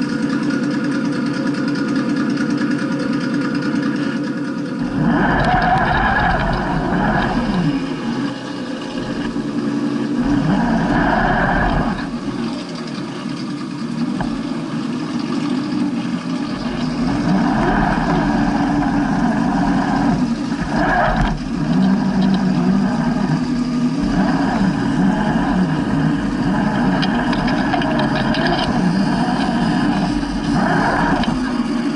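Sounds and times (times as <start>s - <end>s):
electric motors whining: 0.0s - 31.9s.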